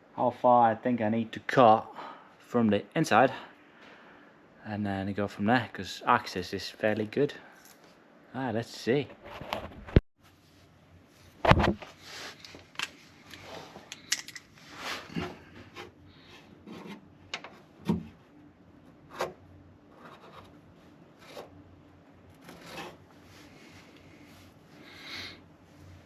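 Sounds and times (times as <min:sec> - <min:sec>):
rubs and scrapes: 0:14.6 - 0:17.7, 0:19.1 - 0:21.6, 0:22.4 - 0:23.6.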